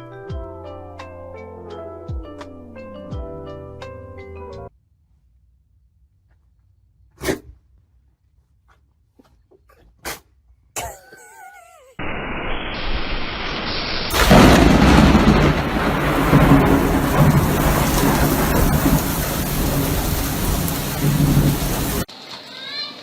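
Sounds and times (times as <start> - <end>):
wavering high-pitched cry: 10.8 - 12.0
heavy rain: 12.0 - 22.8
deep thunder-like rumble: 14.1 - 22.1.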